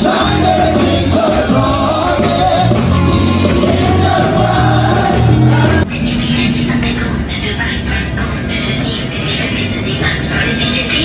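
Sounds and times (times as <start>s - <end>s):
steady bass line: 0.0s - 5.9s
person singing: 0.0s - 6.1s.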